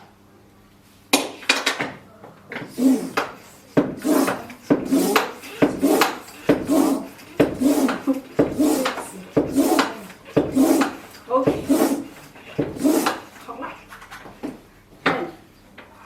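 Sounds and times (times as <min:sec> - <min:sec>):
hand pump strokes: 0:02.6 - 0:13.5.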